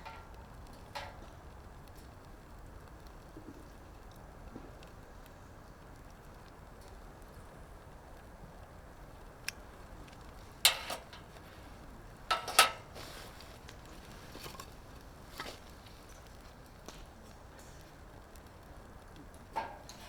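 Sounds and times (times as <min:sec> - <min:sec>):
light knocks and clatters: 0:00.0 - 0:02.3, 0:10.0 - 0:18.0
faint steady hiss: 0:00.0 - 0:20.0.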